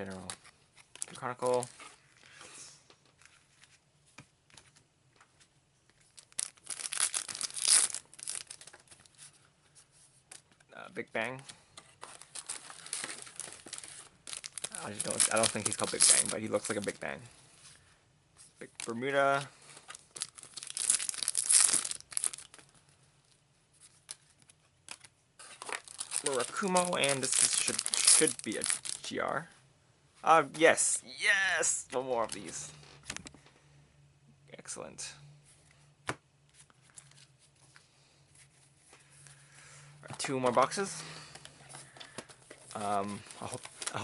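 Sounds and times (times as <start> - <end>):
foil wrapper tearing and crinkling: 6.2 - 8.7, 12.4 - 16.8, 20.1 - 22.6, 25.8 - 29.1.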